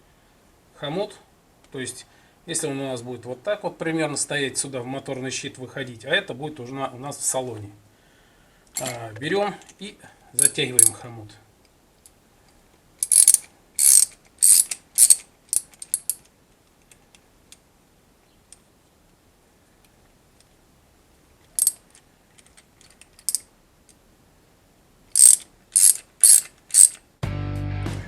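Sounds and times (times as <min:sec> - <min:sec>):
hose clamp rattling clicks: 0:10.4 - 0:11.0, 0:13.0 - 0:17.6, 0:21.5 - 0:24.0, 0:25.1 - 0:27.0.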